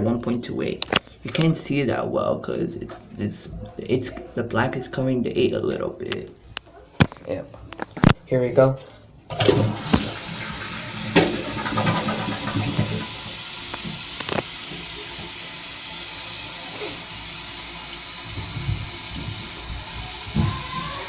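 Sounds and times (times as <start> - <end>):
toilet flushing: 9.3 - 21.0
tank refilling hiss: 9.8 - 21.0.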